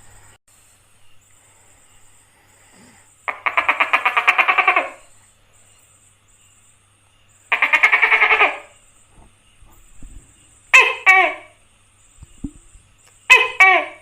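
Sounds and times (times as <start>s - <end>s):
gecko calling: 2.2s - 14.0s.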